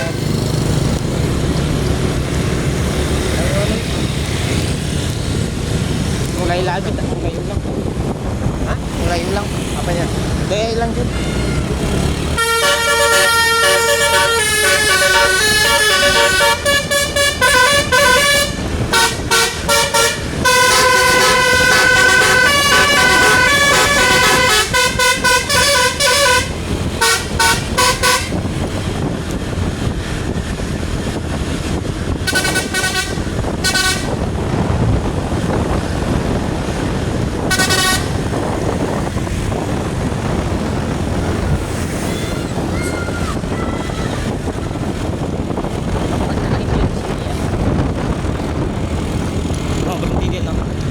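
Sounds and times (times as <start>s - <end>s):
bus horn playing melody: 0.0s - 0.3s, 11.1s - 28.8s, 32.2s - 34.4s, 37.4s - 38.9s.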